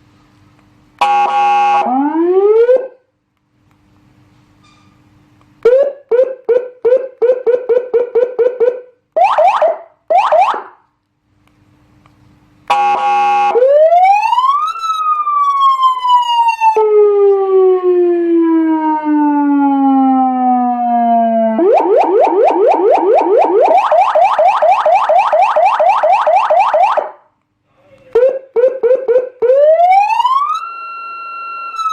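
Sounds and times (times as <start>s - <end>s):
buzzing horn blast: 1.0s - 2.0s, 12.7s - 13.7s
electronic siren cycling tones: 1.0s - 3.0s, 5.6s - 10.8s, 12.7s - 27.2s, 28.2s - 31.9s.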